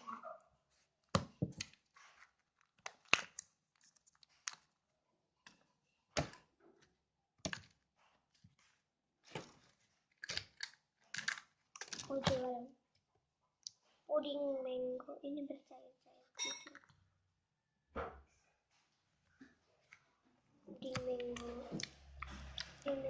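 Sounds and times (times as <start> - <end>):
crackly plastic rustles: 0.8 - 4.9, 5.5 - 12.7.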